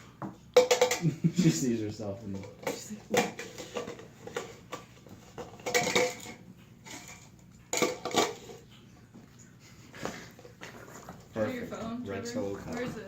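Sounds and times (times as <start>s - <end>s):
plastic cup clattering: 0.6s - 1.2s, 2.3s - 8.6s.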